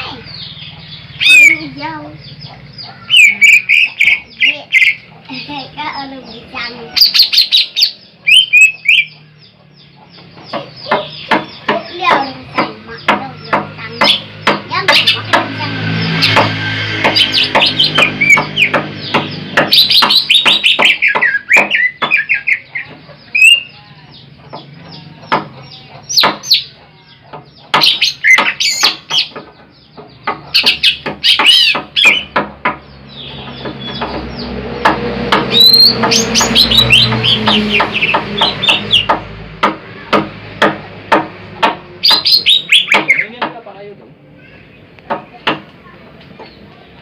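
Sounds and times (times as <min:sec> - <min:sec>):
bird singing chirps and whistles: 0:00.2 - 0:01.6, 0:07.0 - 0:09.2, 0:17.1 - 0:22.7, 0:23.3 - 0:23.8, 0:35.5 - 0:39.1, 0:42.0 - 0:43.3.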